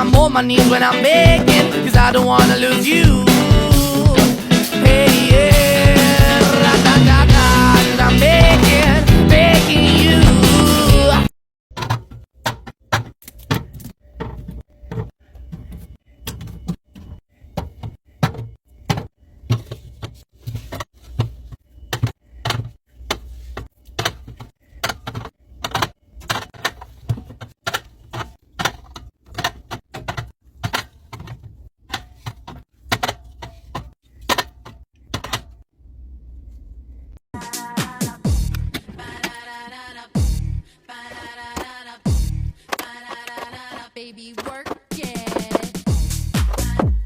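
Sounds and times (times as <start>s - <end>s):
drink cans and bottles clacking: 42.6s - 45.9s.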